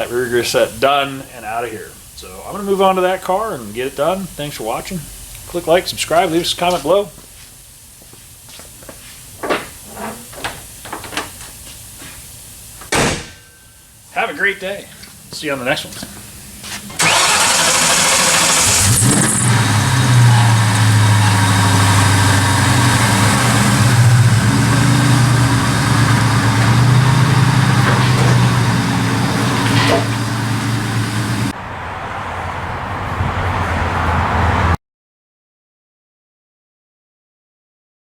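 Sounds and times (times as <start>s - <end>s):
car engine starting and running: 16.9s - 34.8s.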